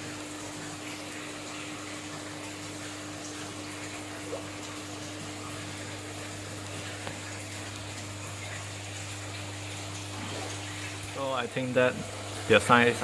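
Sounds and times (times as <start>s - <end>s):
aquarium water rushing: 0.0s - 13.0s
low pump hum: 0.0s - 13.0s.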